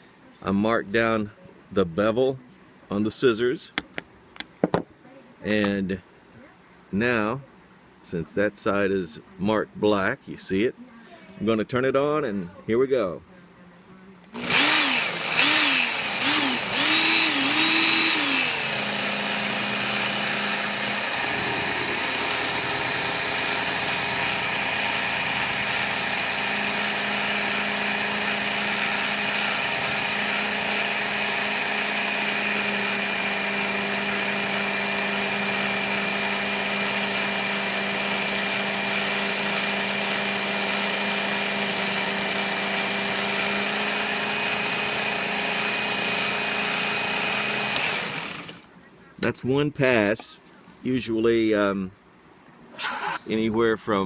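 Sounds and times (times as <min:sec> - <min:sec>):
belt sharpener motor whine: 0:14.3 - 0:48.7.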